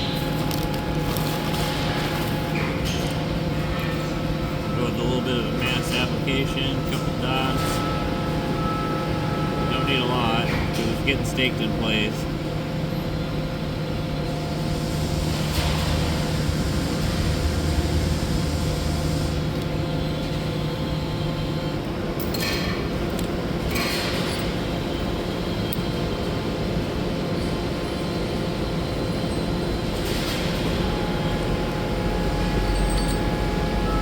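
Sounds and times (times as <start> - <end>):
machine hum of shop equipment: 0.0 - 34.0
metallic clinks of steel parts: 32.7 - 33.3.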